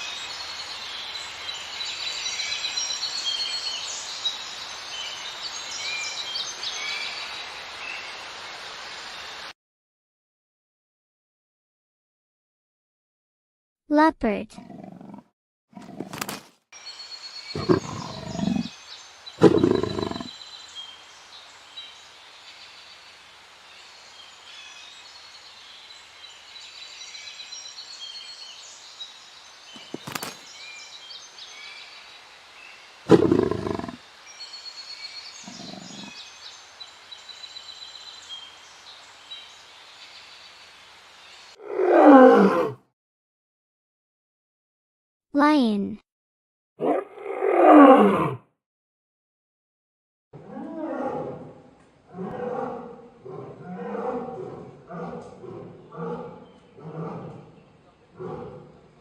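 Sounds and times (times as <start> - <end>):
leopard roaring: 14.6 - 16.2, 17.6 - 18.7, 19.4 - 20.3, 33.1 - 34.0, 35.4 - 36.1, 41.6 - 42.8, 46.8 - 48.4, 50.4 - 58.8
birds chirping: 15.8 - 23.1, 23.8 - 41.6
insects chirping: 16.8 - 41.6.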